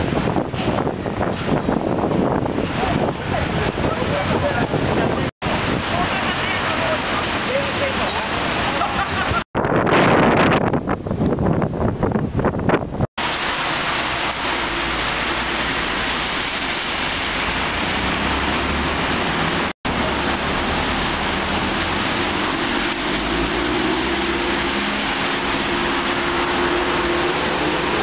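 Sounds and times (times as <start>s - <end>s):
heavy rain: 0.0s - 10.1s, 13.2s - 28.0s
strong wind rushing: 0.0s - 28.0s.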